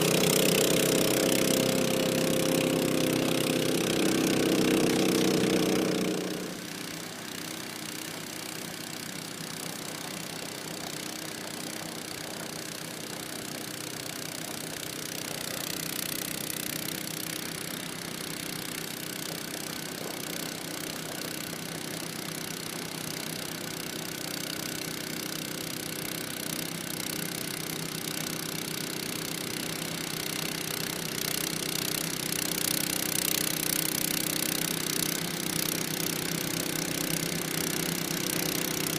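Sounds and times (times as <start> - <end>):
snowblower engine running: 0.0 - 38.9.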